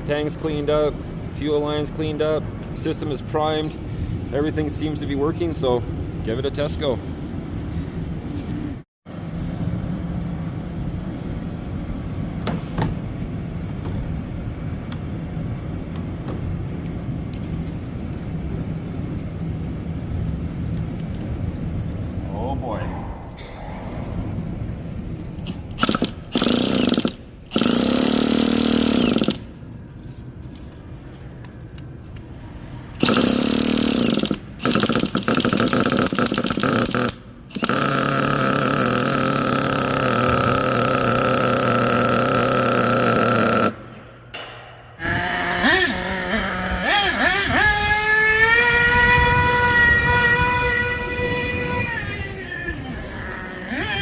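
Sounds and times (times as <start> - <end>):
model truck engine revving: 25.4 - 29.4, 33.0 - 43.8, 45.0 - 52.4.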